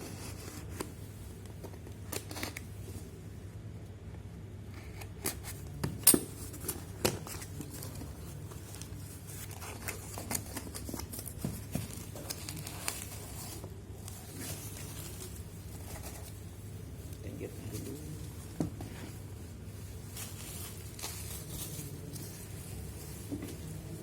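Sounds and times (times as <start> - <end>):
steady low hum: 0.0 - 24.0
packaging clicks and rustles: 6.4 - 16.4.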